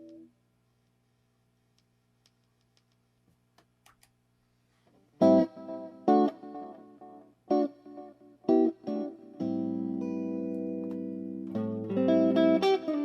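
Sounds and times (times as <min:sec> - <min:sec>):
faint steady hum: 0:00.0 - 0:13.0
small clicks: 0:01.7 - 0:04.2
electric guitar chords strummed: 0:05.2 - 0:13.0.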